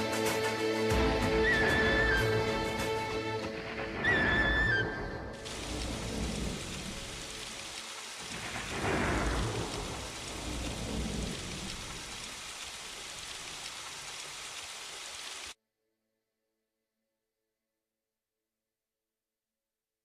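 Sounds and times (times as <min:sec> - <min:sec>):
rain hissing: 0:00.0 - 0:15.6
thunder rumbling: 0:03.7 - 0:14.2.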